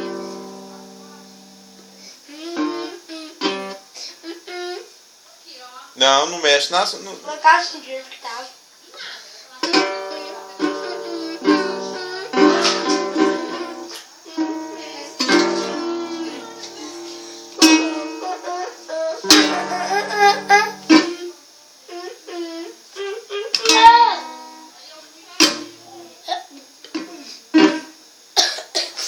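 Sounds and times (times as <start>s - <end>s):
strummed string instrument chords: 9.6s - 21.2s.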